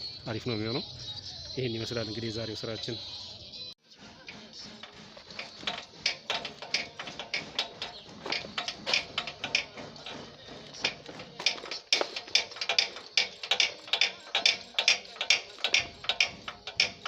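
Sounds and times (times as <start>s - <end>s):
hand tools clicking on metal: 4.0s - 17.0s.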